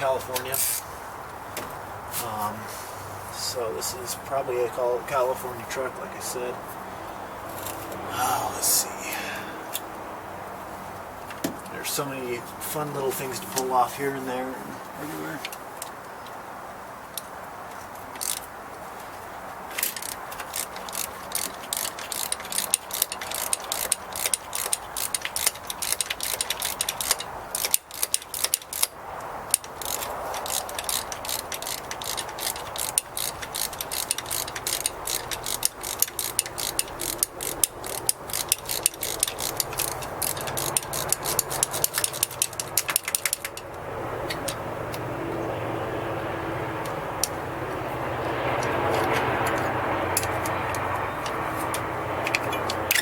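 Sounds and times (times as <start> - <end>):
ratchet wrench clicking: 7.5 - 8.0, 18.2 - 18.5, 19.7 - 45.0, 50.2 - 53.0.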